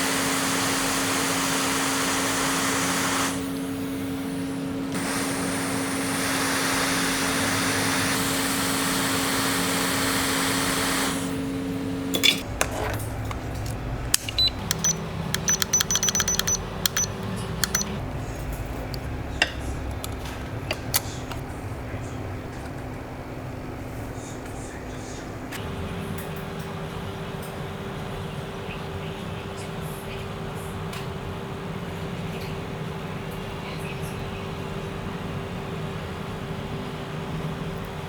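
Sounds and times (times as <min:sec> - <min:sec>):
hot air station hissing: 0:00.0 - 0:22.7
metal tools clicking on board: 0:13.6 - 0:17.9.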